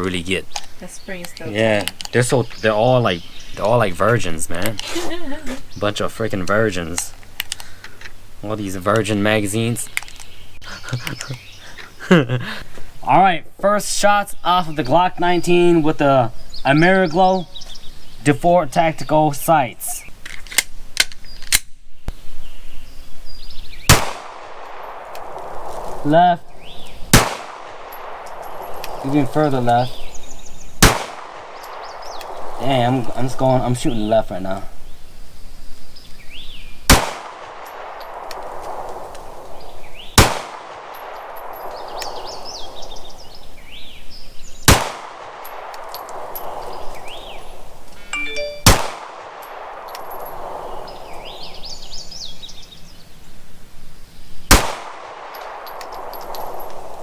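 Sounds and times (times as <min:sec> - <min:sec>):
pistol shots: 0:23.9 - 0:26.0, 0:27.1 - 0:30.1, 0:30.8 - 0:32.6, 0:36.9 - 0:43.2, 0:44.6 - 0:46.8, 0:48.6 - 0:50.6, 0:54.5 - 0:57.0
loud echoing gunshot: 0:23.9 - 0:30.1, 0:30.8 - 0:33.6, 0:36.9 - 0:43.6, 0:44.6 - 0:47.4, 0:48.6 - 0:51.7, 0:54.5 - 0:57.0.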